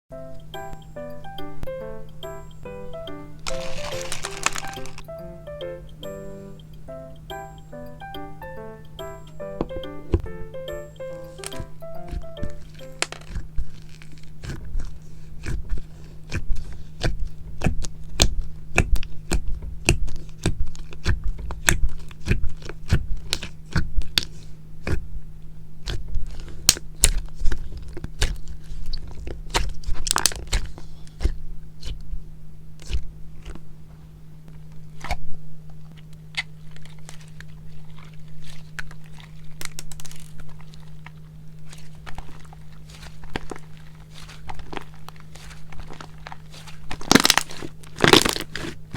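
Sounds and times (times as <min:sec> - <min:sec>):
steady low hum: 0:00.1 - 0:48.9
slime clicking and popping: 0:11.2 - 0:25.0, 0:26.7 - 0:32.0.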